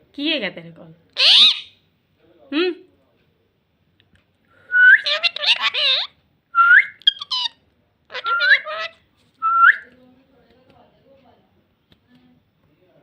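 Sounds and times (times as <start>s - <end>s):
parrot speech-like chatter: 1.2s - 1.7s, 5.0s - 6.1s, 7.1s - 9.0s
parrot whistling: 1.2s - 1.8s, 4.7s - 7.5s, 8.1s - 9.8s.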